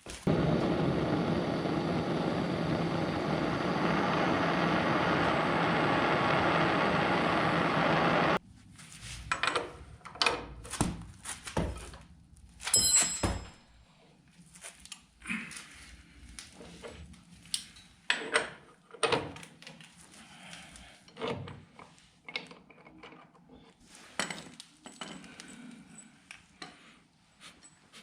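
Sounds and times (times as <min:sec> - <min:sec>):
loud steady mechanical noise: 0:00.3 - 0:08.4.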